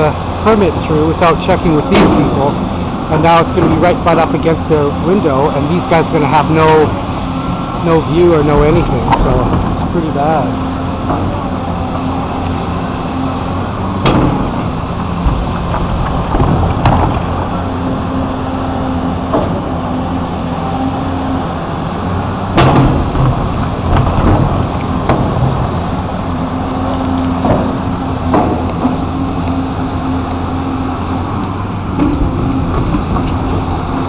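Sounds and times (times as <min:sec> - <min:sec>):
backhoe engine running: 0:00.0 - 0:34.0
metal clanks and knocks: 0:01.5 - 0:02.6, 0:03.4 - 0:04.4, 0:08.4 - 0:12.1, 0:14.0 - 0:17.6, 0:19.3 - 0:19.8, 0:22.5 - 0:26.0, 0:27.3 - 0:29.3, 0:31.9 - 0:34.0.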